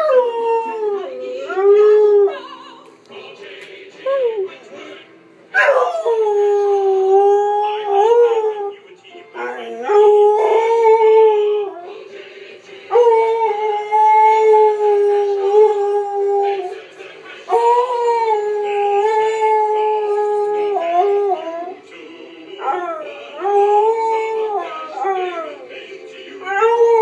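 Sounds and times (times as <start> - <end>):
dog howling: 0.0 - 2.6, 5.6 - 8.8, 9.4 - 12.0, 12.9 - 16.8, 17.5 - 25.7, 26.4 - 27.0.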